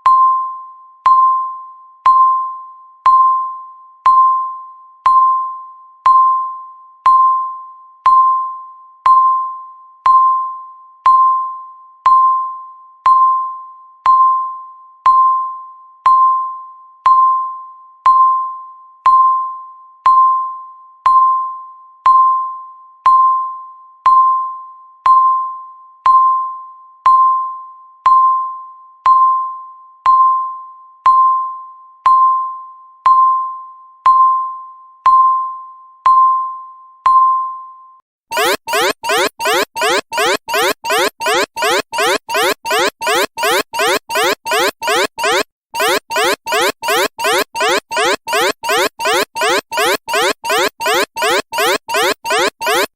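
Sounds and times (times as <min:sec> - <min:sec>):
timer pinging beeps: 0:38.3 - 0:52.9.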